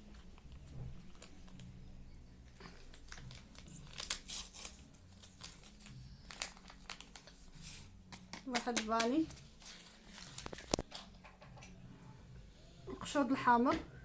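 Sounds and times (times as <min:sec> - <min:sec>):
packet crinkling and tearing: 0:00.1 - 0:01.8, 0:02.5 - 0:10.9.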